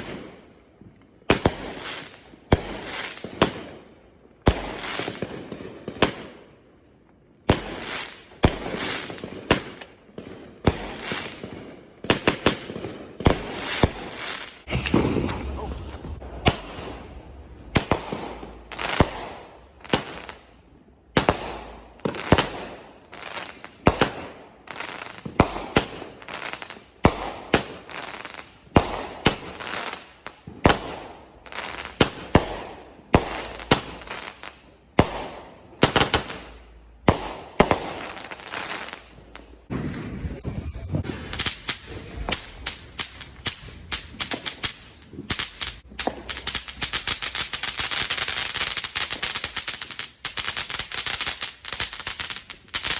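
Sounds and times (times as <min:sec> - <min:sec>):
crackling firework pops: 0:10.6 - 0:20.5, 0:21.1 - 0:22.9, 0:35.0 - 0:52.9
fireworks bangs: 0:10.7 - 0:24.4, 0:35.0 - 0:48.3.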